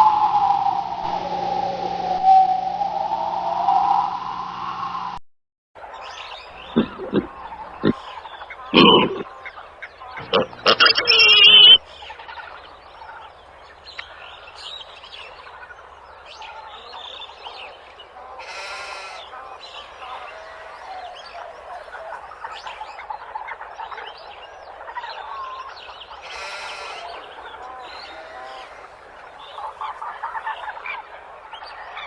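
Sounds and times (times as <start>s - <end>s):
background noise: 5.8s - 32.0s
animal calls: 6.0s - 11.9s, 16.6s - 31.0s.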